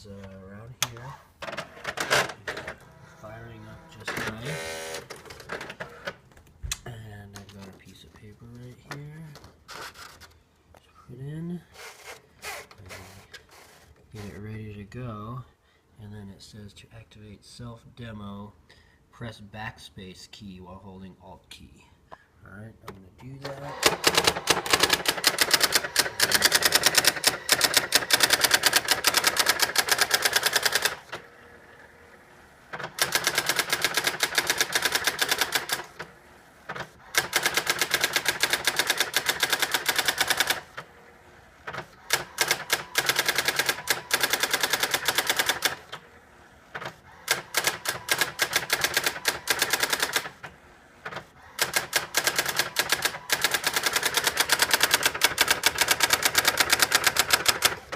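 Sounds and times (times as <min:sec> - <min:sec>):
electronic typewriter clattering: 0:23.6 - 0:31.2, 0:32.7 - 0:36.0, 0:36.7 - 0:40.8, 0:41.6 - 0:46.0, 0:46.8 - 0:50.4, 0:51.0 - 0:57.9.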